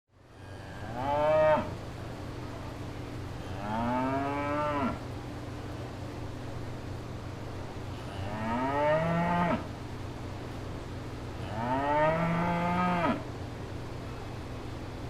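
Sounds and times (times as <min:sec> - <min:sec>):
cattle mooing: 0:00.5 - 0:01.8, 0:03.6 - 0:05.0, 0:08.1 - 0:09.6, 0:11.4 - 0:13.2.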